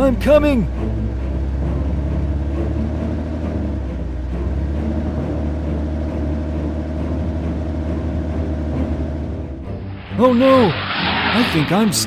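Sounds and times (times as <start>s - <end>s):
heavy vehicle engine rumble: 0.0s - 12.0s.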